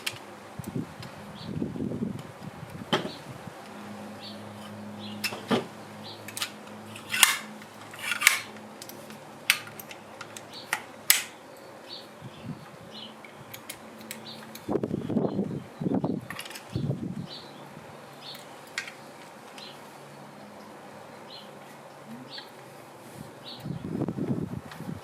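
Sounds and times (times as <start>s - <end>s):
air stapler clicks and snaps: 9.5s - 11.4s.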